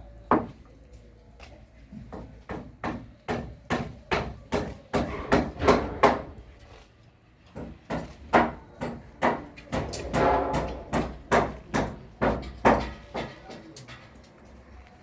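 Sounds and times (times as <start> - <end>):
hammer blows: 10.0 - 13.3.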